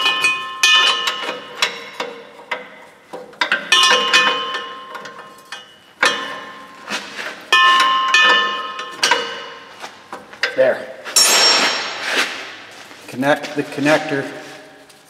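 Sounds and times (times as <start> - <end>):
metal wrench clinking: 0.0 - 9.7, 11.2 - 12.0.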